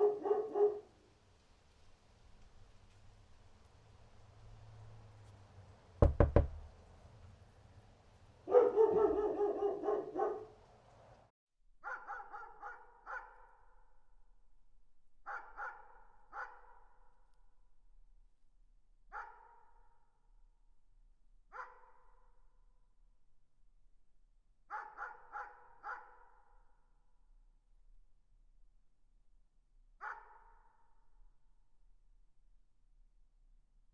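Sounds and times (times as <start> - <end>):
dog barking: 0.0 - 1.0, 8.4 - 10.6, 11.8 - 13.5, 15.3 - 16.8, 19.1 - 19.6, 21.5 - 22.0, 24.7 - 26.4, 30.0 - 30.6
knocking: 6.0 - 6.7.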